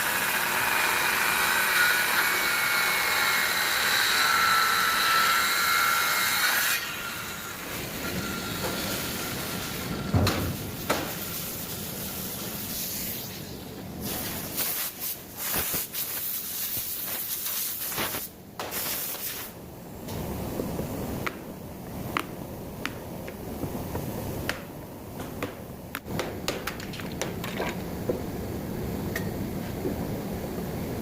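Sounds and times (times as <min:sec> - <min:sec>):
sharp knocks: 0:24.5 - 0:28.2.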